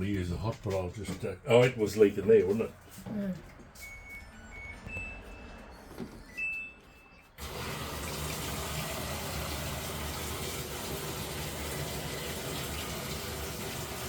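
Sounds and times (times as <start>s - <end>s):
water rushing into machine: 7.4s - 14.0s.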